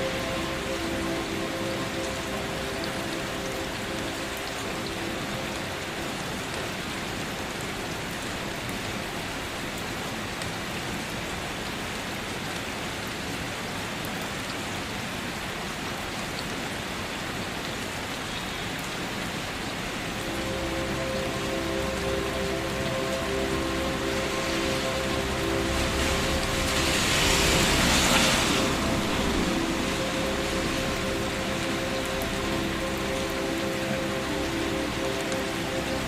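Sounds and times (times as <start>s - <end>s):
raindrops ticking: 0.0s - 10.6s, 19.8s - 36.0s
steady rain hiss: 0.0s - 36.0s.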